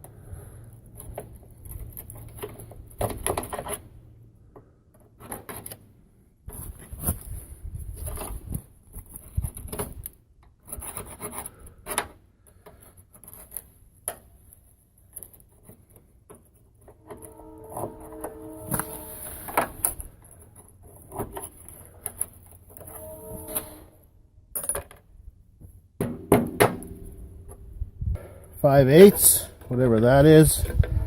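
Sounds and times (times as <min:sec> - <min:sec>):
rasping rubbing strokes: 0:17.0 - 0:20.0.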